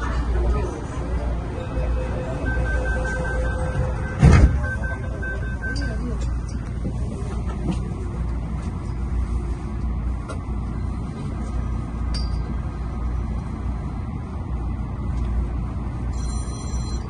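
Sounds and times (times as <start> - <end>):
high whine: 0.0 - 6.8
electric train rumbling: 0.0 - 17.0.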